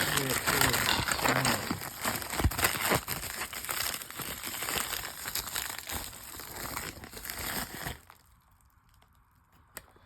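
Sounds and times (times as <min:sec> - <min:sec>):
wrapping crinkling and rustling: 0:00.0 - 0:10.0.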